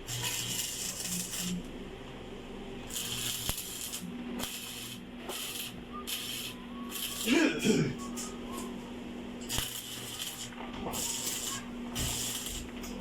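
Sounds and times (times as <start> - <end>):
welding arc sizzling and crackling: 0.0 - 1.8, 2.8 - 7.7, 9.4 - 13.0.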